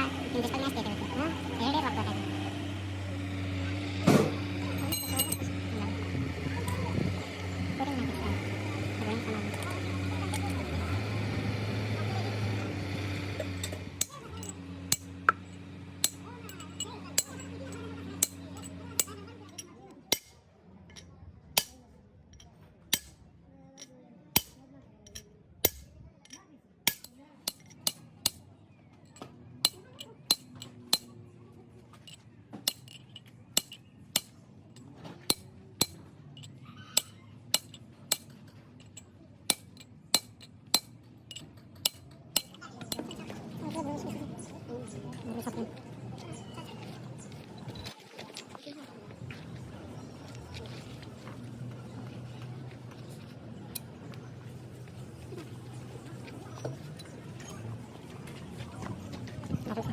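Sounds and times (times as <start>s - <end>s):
low machine hum: 0.0s - 19.5s
metal clinks and taps: 4.7s - 5.6s, 20.9s - 21.1s, 32.0s - 43.4s.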